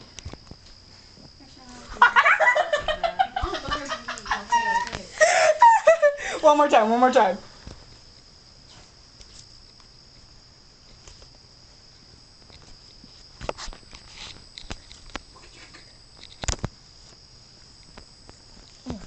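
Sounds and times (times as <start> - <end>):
stomach pops and squelches: 14.6 - 16.8.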